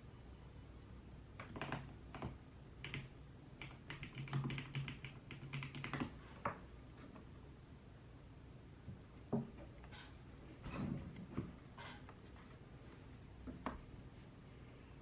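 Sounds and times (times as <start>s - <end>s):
typing on computer keyboard: 1.4s - 6.6s.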